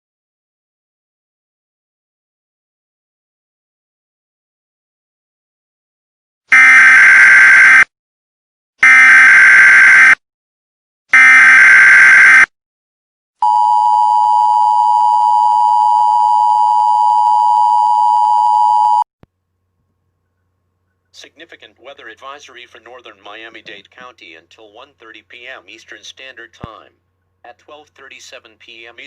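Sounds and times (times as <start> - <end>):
two-tone attention signal: 13.4 - 19.0.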